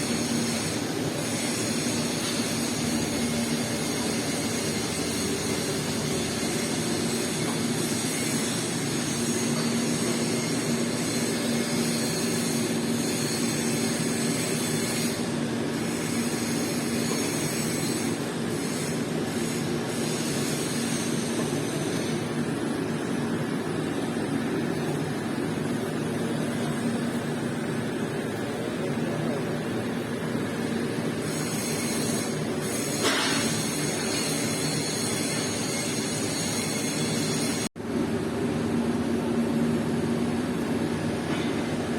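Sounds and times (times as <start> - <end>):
welding equipment hissing: 0.0 - 26.1
mechanical hum: 0.0 - 41.9.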